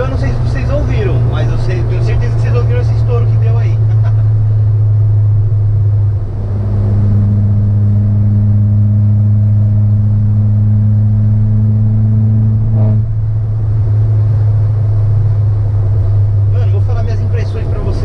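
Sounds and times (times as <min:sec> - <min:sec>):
car engine drone from inside cabin: 0:00.0 - 0:18.0.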